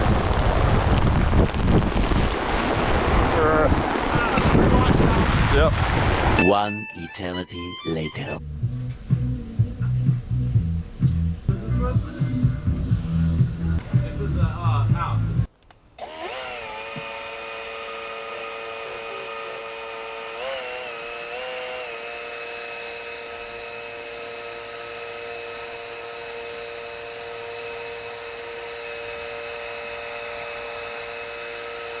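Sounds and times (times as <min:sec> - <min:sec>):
small motor whining: 0:16.0 - 0:32.0.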